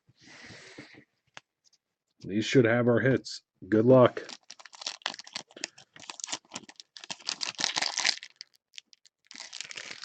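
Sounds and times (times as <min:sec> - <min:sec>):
wrapper tearing and crinkling: 0:04.2 - 0:10.0.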